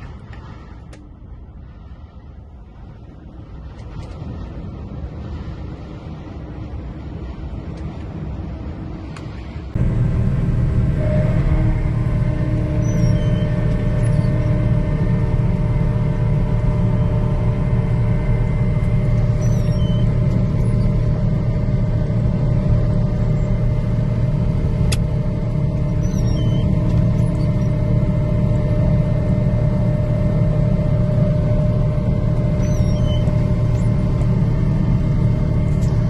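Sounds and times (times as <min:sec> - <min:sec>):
faint steady hum: 0:00.0 - 0:36.0
car cabin rumble: 0:09.8 - 0:36.0.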